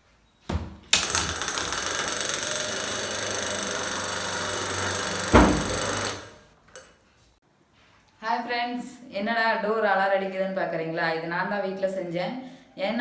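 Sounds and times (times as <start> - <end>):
door alarm motor buzzing: 1.0 - 6.3
knock: 5.3 - 5.8.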